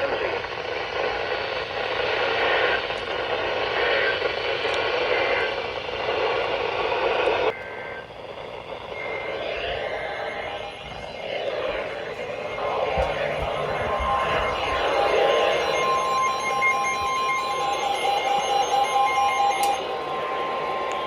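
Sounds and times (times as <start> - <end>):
radio static hiss: 0.0 - 21.0
faint wavering tones: 7.5 - 21.0.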